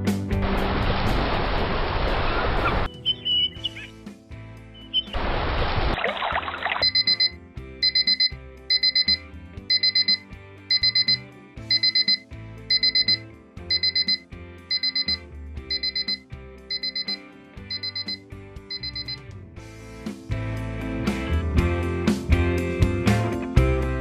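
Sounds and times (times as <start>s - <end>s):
music: 0.0s - 24.0s
alarm clock beeping: 6.8s - 19.2s.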